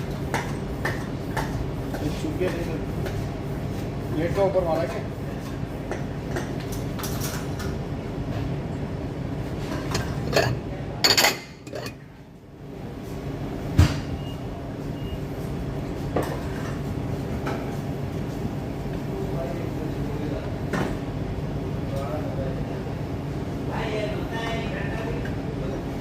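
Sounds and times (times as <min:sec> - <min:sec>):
dishes and utensils clinking: 0:09.6 - 0:12.1.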